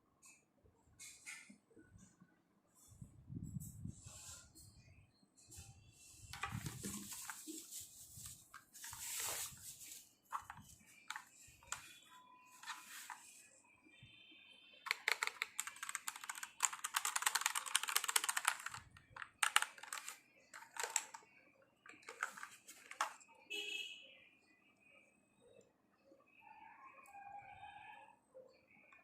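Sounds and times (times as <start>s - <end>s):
mechanical keyboard typing: 10.3s - 11.9s, 14.8s - 21.3s, 21.9s - 23.2s.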